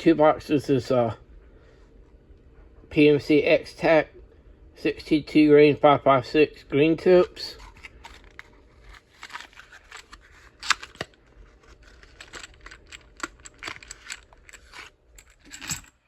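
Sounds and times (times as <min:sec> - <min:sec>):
cartridges clicking and scraping: 0:07.4 - 0:16.0.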